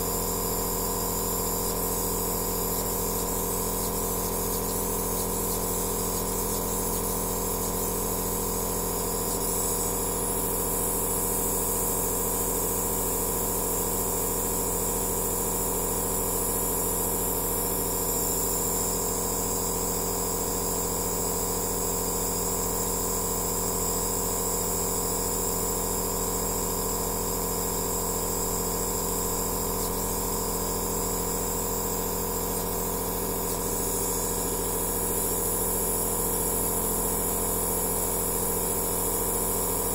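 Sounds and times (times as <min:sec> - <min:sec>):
compressor motor hum: 0:28.2 - 0:39.9.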